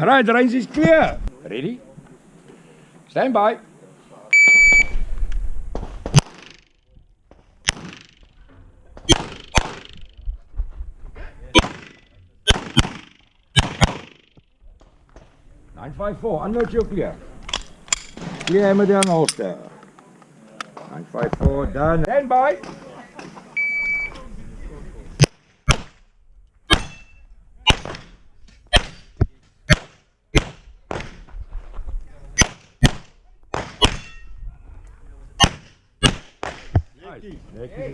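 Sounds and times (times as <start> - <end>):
pistol shots with echo: 9.1 - 10.1, 11.6 - 14.2.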